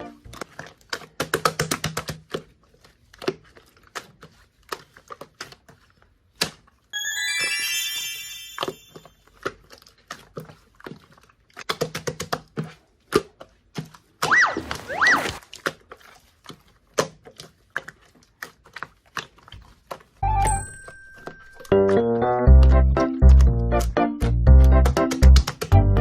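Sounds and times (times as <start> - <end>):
sparkling chime sound effect: 7.0 - 9.2
wobbly gliding sound effect: 14.3 - 15.4.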